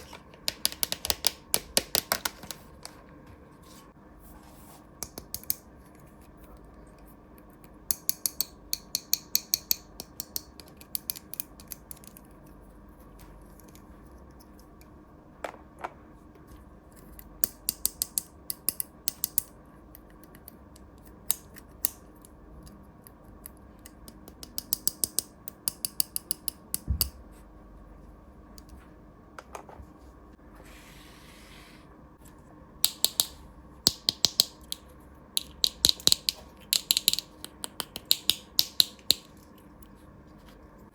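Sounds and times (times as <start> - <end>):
plastic toy pieces clicking: 0.4 - 2.6, 32.8 - 34.8, 35.4 - 39.4.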